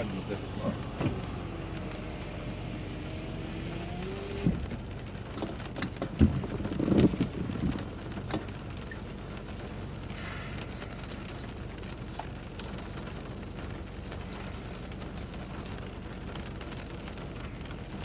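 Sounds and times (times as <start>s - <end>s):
rain on a car: 0.0s - 18.0s
electric window motor whining: 0.8s - 4.7s
knocks and rustles: 4.4s - 16.8s.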